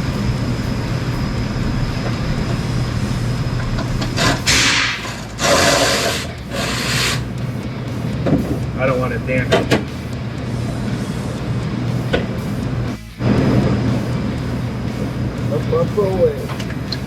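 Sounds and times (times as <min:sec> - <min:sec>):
steady low hum: 0:00.0 - 0:17.0
radiator rubbing and scraping: 0:00.4 - 0:07.4.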